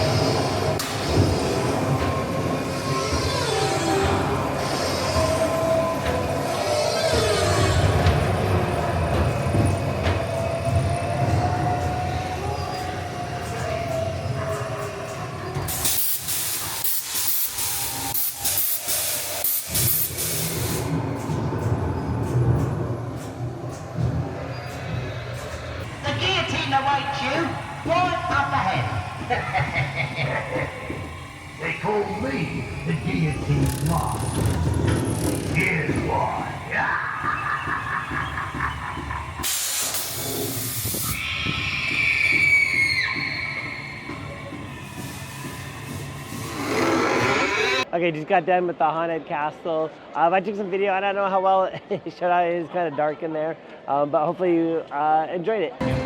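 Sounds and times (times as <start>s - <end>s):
ride car rumbling on track: 0.0s - 16.9s, 18.9s - 47.9s
pulsing loud hiss: 15.6s - 20.9s, 25.8s - 47.8s
hissing air blast: 15.7s - 20.9s, 39.4s - 44.0s
falling shriek-like tone: 41.0s - 44.5s.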